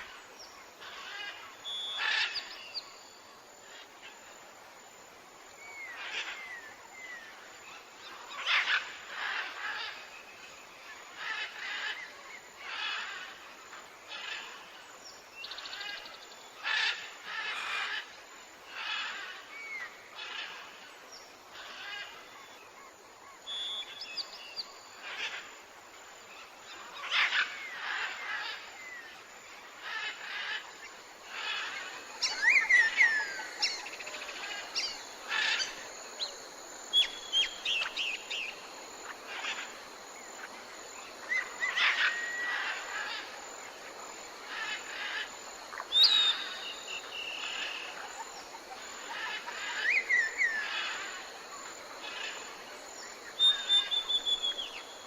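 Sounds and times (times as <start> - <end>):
insects hissing: 0.0 - 55.0
birds calling and chirping: 29.8 - 43.4, 44.4 - 55.0.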